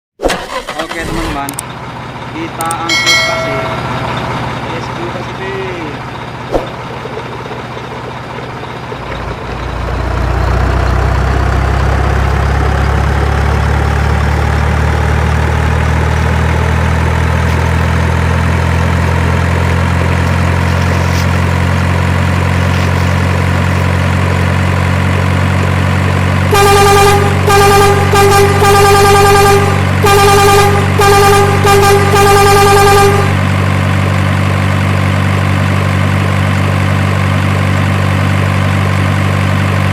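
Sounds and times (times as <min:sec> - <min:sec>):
truck engine running: 0:00.3 - 0:39.9
horn honking: 0:02.9 - 0:04.4, 0:26.5 - 0:33.6.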